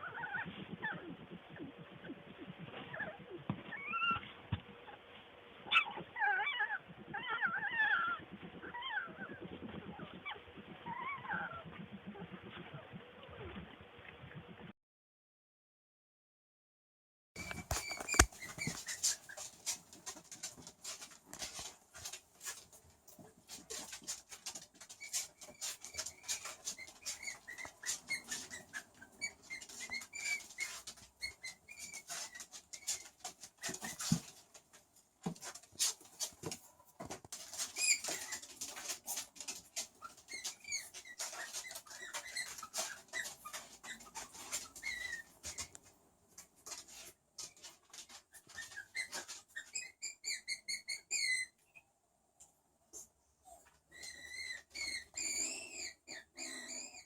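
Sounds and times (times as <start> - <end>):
skunk squeaks and chirps: 0.0 - 4.3, 17.4 - 19.4, 24.9 - 34.2, 37.6 - 38.8, 39.8 - 45.8, 48.3 - 51.8, 53.9 - 57.0.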